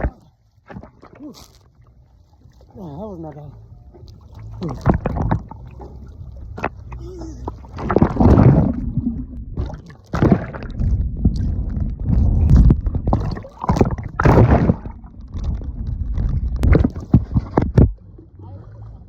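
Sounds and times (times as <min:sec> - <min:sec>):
ocean water splashing: 0:00.0 - 0:19.0
wind rumbling on microphone: 0:04.8 - 0:19.0.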